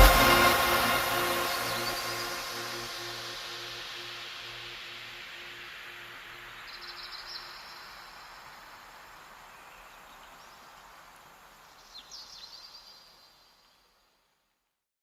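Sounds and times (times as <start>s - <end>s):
low musical notes: 0.0s - 4.6s
wind: 0.0s - 14.5s.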